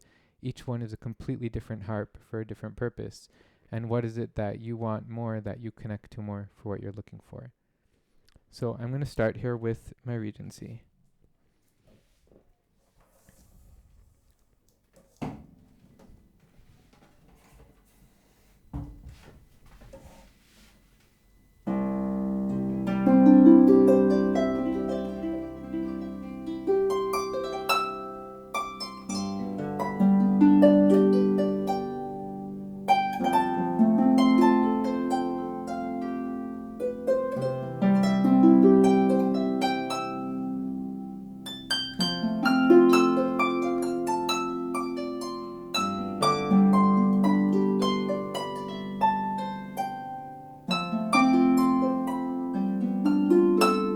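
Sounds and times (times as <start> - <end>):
folk harp playing: 21.6 - 53.9.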